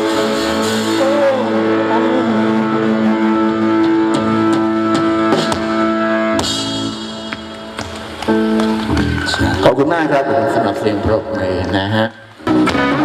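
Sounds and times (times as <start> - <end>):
live band holding chords: 0.0 - 13.0.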